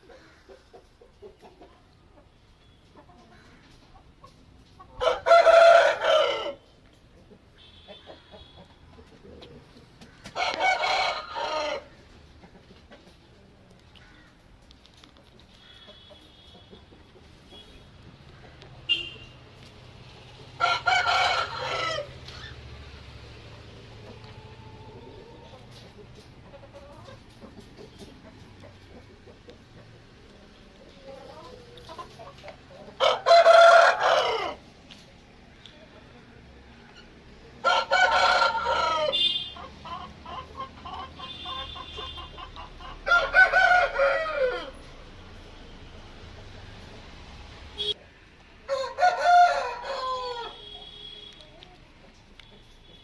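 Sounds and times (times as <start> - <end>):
rooster crowing: 5.0 - 6.6, 10.4 - 11.9, 20.6 - 22.5, 33.0 - 34.6, 37.6 - 39.3, 43.0 - 44.9, 48.7 - 50.9
faint clucking: 39.2 - 43.0.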